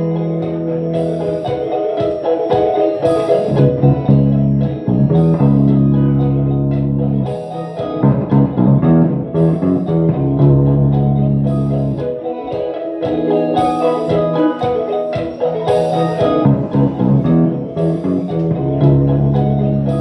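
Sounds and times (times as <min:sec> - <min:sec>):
live electric guitar music: 0:00.0 - 0:20.0.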